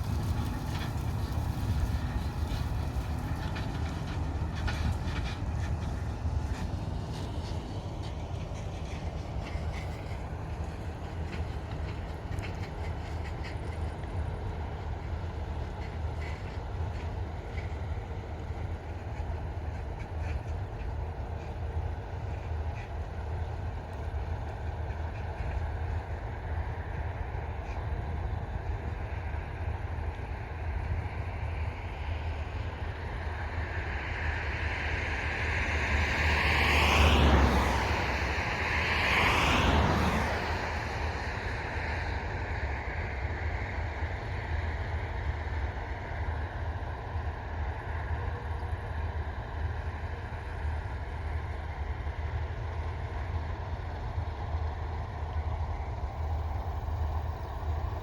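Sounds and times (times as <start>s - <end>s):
combine harvester engine drone: 0.0s - 58.0s.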